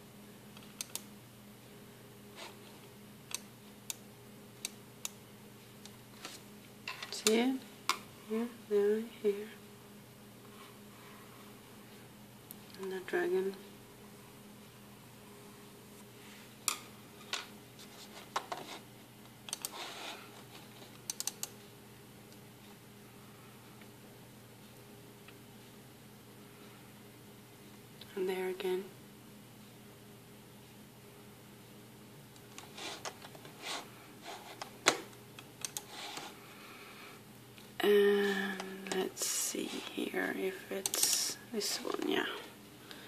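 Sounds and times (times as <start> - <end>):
faint steady hum: 0.0 - 43.0
computer keyboard clicks: 21.1 - 21.6, 35.6 - 35.9.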